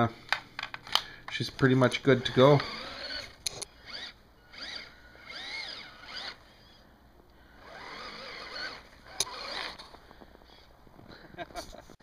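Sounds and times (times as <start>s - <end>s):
small electric motor whirring: 2.2s - 6.8s, 7.5s - 10.7s.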